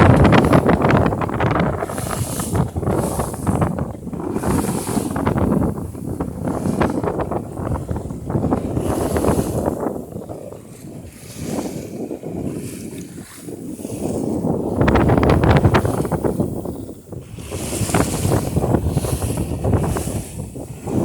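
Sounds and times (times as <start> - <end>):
water rushing along boat hull: 0.0 - 21.0
wind buffeting microphone: 0.0 - 21.0.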